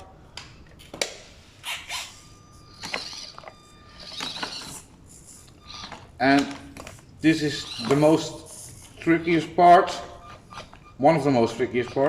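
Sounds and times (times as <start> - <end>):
small electric motor whining: 1.6 - 6.2, 6.8 - 9.5
tyres clicking and scraping: 2.8 - 9.2.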